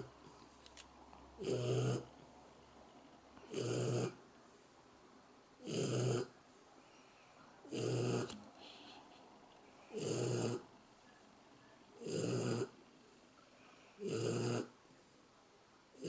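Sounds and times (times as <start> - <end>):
puppy snoring: 1.4 - 2.1, 3.4 - 4.2, 5.6 - 6.3, 7.7 - 8.9, 9.9 - 10.7, 12.0 - 12.8, 14.0 - 14.8.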